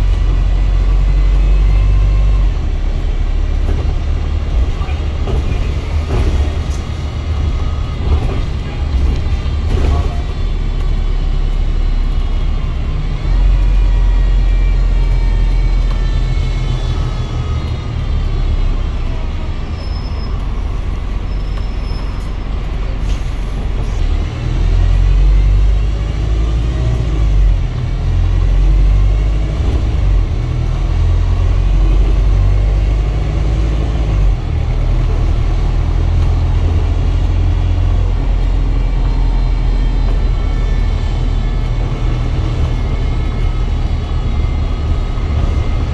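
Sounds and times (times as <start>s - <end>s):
bus engine rumble: 0.0s - 45.9s
whirly whining tones: 27.2s - 45.9s.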